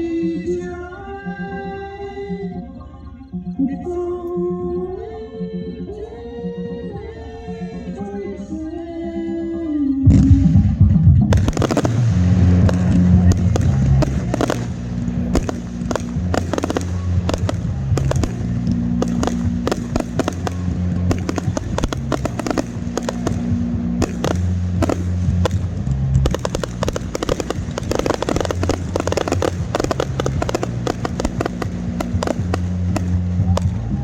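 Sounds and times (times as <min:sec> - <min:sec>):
background music with bass: 0:00.0 - 0:34.0
fireworks bangs and crackling: 0:11.3 - 0:33.8.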